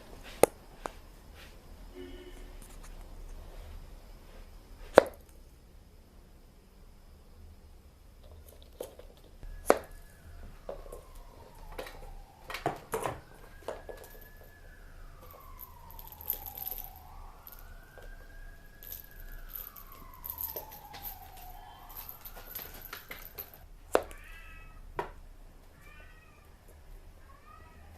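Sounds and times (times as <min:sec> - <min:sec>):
siren wailing: 0:09.4 - 0:23.6.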